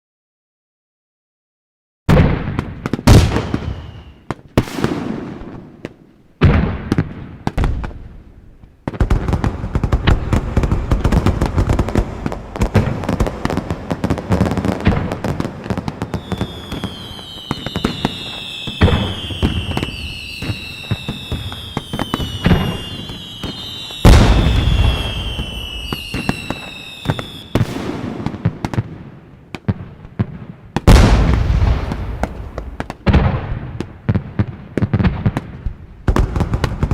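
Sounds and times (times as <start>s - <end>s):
fireworks booming: 2.1s - 36.9s
fireworks crackling: 2.5s - 36.9s
whistles sliding down in pitch: 3.6s - 4.2s, 16.2s - 27.6s.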